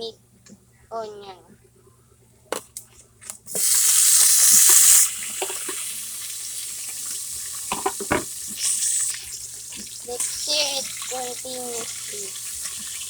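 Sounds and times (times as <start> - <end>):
onion sizzling in hot oil: 3.5 - 13.0.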